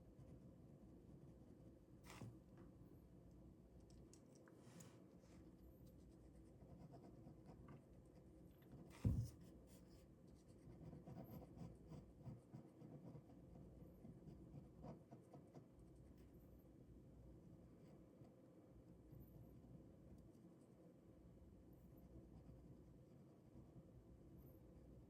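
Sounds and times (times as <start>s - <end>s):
pen scratching on paper: 8.7s - 15.7s
short thump: 9.0s - 9.5s.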